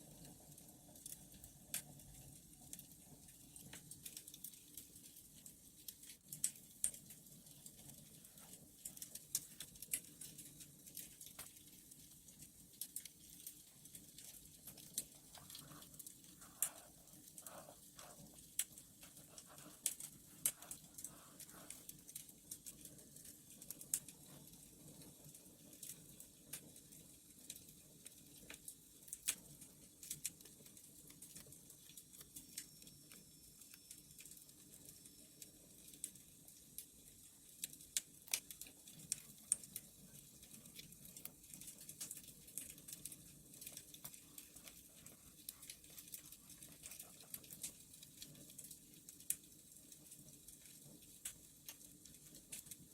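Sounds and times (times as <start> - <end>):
wood fire crackling: 0.0 - 52.9.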